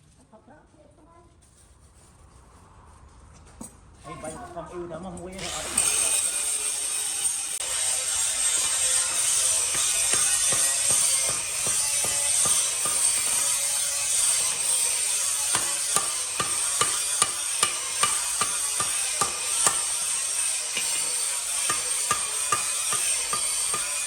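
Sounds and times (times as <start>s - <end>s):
hammer striking metal on anvil: 7.6s - 24.0s.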